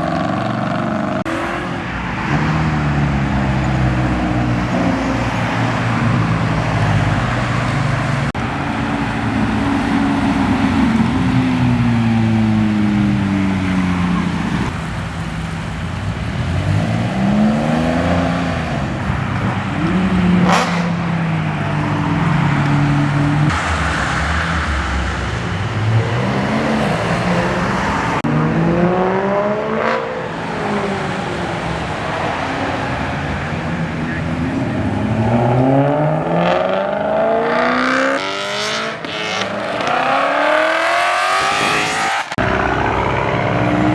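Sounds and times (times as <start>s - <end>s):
car engines revving past: 0.0s - 43.9s.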